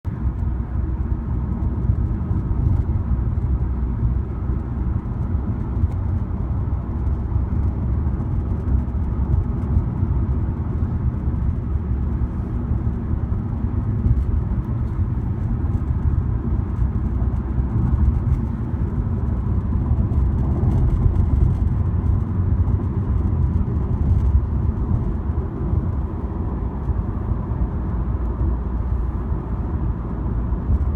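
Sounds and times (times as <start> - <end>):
car road and engine rumble: 0.0 - 30.9.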